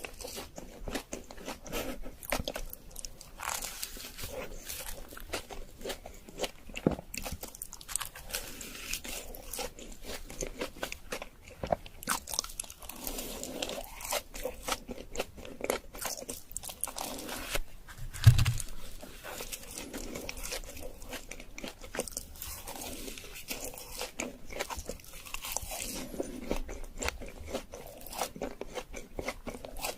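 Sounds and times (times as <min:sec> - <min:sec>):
person chewing donuts: 0:00.0 - 0:29.9
low loud thump: 0:18.0 - 0:18.6.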